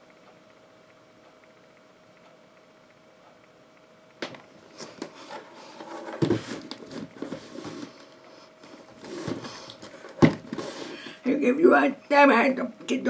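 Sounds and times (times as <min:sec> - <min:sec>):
rustling and rubbing: 0:04.7 - 0:11.0.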